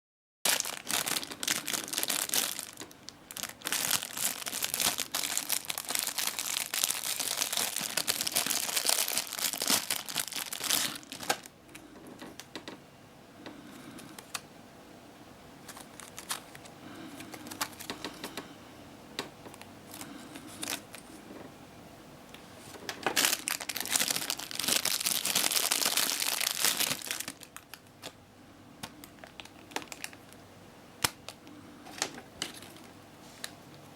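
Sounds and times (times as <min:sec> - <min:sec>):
plastic packaging crinkling: 0:00.5 - 0:11.5, 0:15.6 - 0:18.0, 0:19.5 - 0:21.0, 0:22.6 - 0:28.2, 0:28.8 - 0:30.4, 0:31.0 - 0:33.6.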